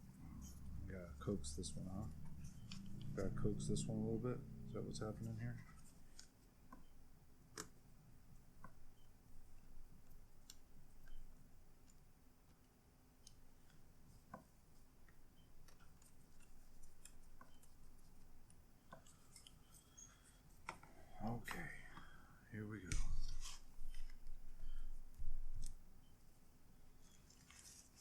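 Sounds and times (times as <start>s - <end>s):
small clicks of laptop parts: 7.5s - 7.8s, 15.1s - 20.9s.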